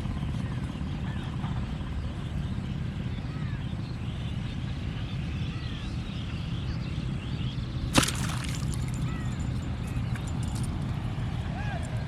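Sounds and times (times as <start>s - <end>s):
fishing rod swishing: 7.9s - 8.8s.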